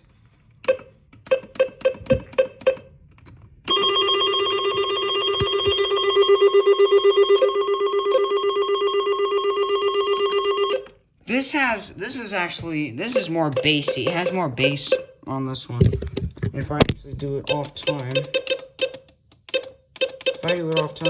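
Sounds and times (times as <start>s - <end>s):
warbling alert tone: 3.7s - 10.8s
quick beeps: 13.1s - 15.1s.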